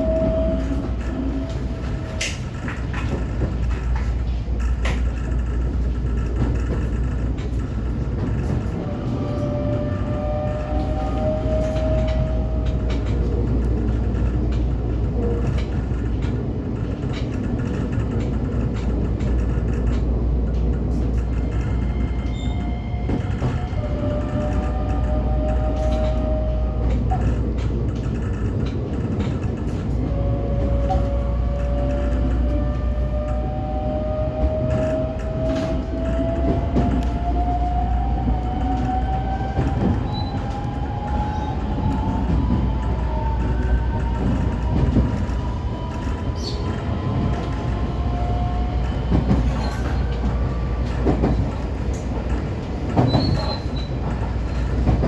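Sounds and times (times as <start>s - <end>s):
train rumbling along track: 0.0s - 55.0s.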